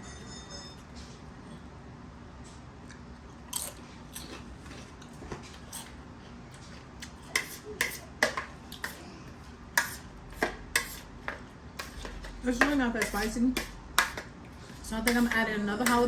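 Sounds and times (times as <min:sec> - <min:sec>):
crunching while eating: 0:02.8 - 0:07.3.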